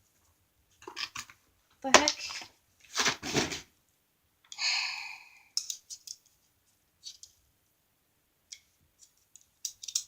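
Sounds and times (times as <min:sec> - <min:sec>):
light clicks of metal pieces: 0:05.6 - 0:06.3, 0:08.5 - 0:10.0.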